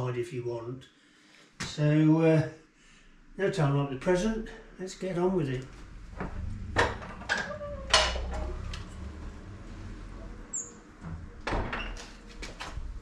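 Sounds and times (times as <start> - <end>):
shutter creak: 6.2 - 9.2.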